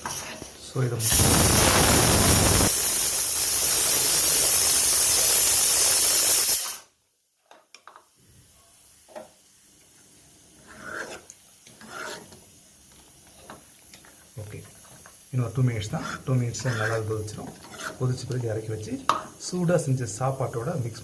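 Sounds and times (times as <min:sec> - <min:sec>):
loud steady hiss: 0:00.7 - 0:07.0.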